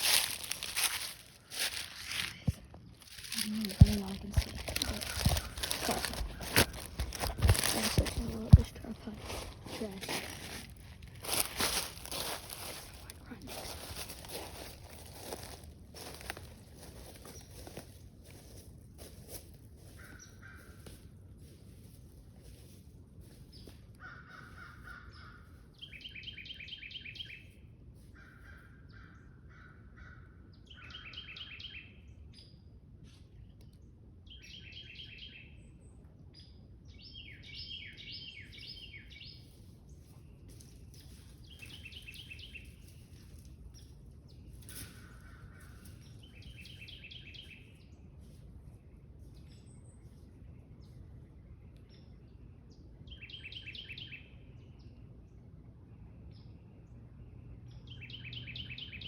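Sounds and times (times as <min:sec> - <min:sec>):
small birds calling: 0:00.0 - 0:18.6.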